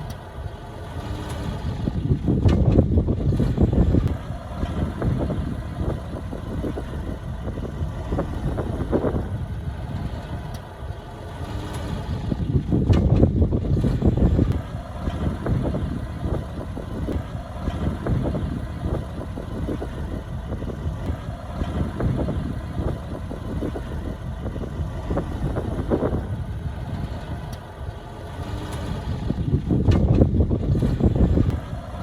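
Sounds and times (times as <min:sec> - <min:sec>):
heavy diesel machinery drone: 0:00.0 - 0:32.0.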